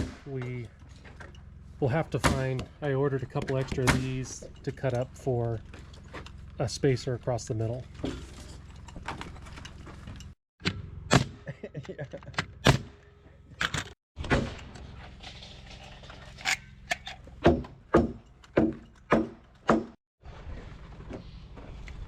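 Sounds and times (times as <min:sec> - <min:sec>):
wood framing knocks and thuds: 0:17.4 - 0:20.0.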